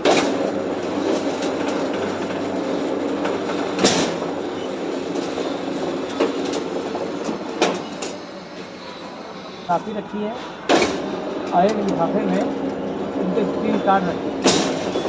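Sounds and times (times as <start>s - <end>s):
machine motor humming: 0.0s - 15.0s
sharp metallic clank: 3.8s - 4.3s, 10.7s - 11.7s, 14.4s - 15.0s.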